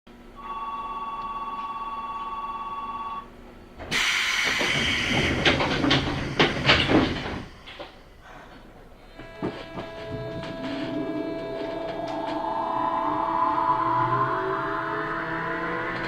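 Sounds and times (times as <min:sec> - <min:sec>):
two-tone electronic signal: 0:00.4 - 0:03.3, 0:09.1 - 0:16.0
train doors knocking shut: 0:03.8 - 0:11.0
compressed air hiss: 0:03.9 - 0:08.5.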